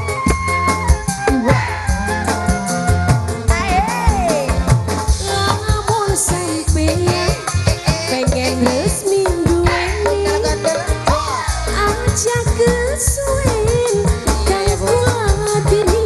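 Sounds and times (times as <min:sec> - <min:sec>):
live band playing: 0:00.0 - 0:16.0
steady bass: 0:00.0 - 0:16.0
drum strokes: 0:00.1 - 0:14.6
wavering gliding lead melody: 0:00.5 - 0:05.6.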